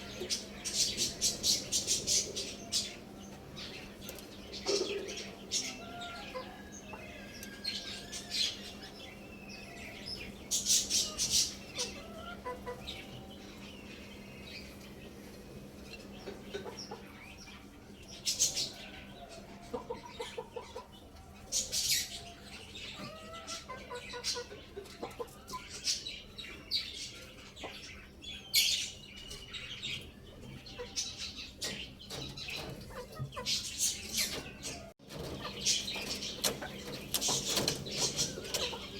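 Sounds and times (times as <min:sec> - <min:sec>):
chickens clucking: 0:00.0 - 0:38.9
wing flapping: 0:34.2 - 0:38.9.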